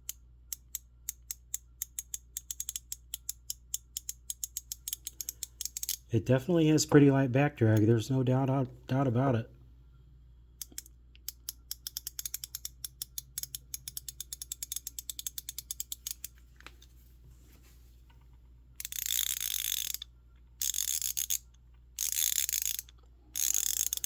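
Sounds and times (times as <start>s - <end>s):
ratchet clicking: 0.0s - 6.1s, 10.6s - 16.4s, 18.8s - 24.0s.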